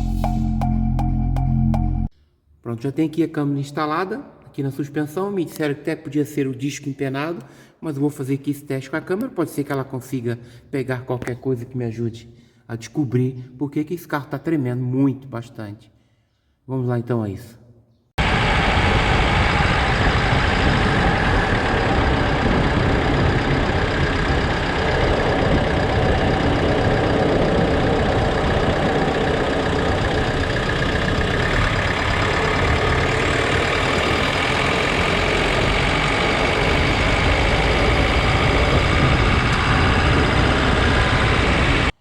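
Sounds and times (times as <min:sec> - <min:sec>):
wind on camera: 0:18.2 - 0:34.5, 0:35.5 - 0:41.9
drivetrain noise: 0:18.2 - 0:41.9
tyre road noise: 0:18.2 - 0:42.0.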